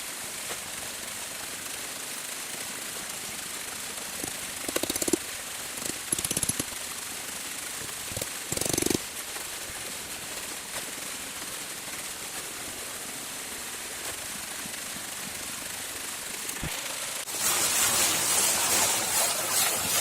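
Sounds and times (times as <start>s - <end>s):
flowing water hiss: 0.0s - 20.0s
rapid rattling: 4.1s - 7.0s.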